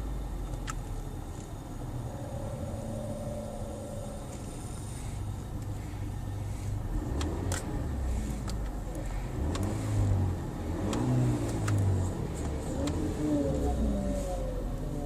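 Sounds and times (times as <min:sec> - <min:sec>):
car engine revving: 0:01.8 - 0:15.0
howl rising and falling: 0:02.0 - 0:04.4.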